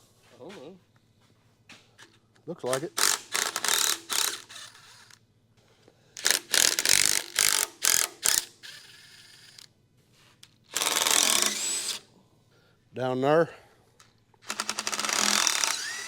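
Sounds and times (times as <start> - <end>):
socket ratchet clicking: 2.8 - 5.2, 6.2 - 8.8.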